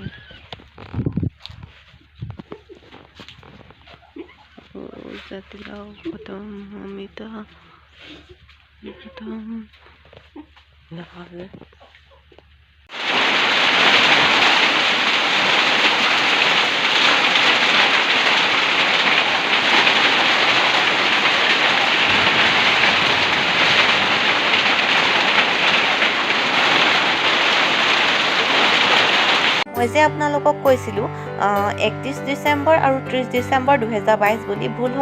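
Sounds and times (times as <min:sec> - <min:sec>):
hail and heavy rain: 0:12.9 - 0:29.7.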